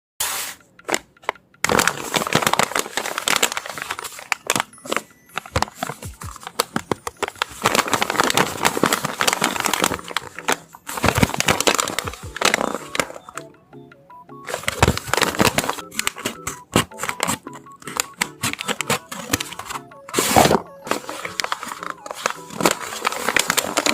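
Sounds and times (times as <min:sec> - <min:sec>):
paper bag crinkling and tearing: 0:01.7 - 0:13.4, 0:14.5 - 0:23.9.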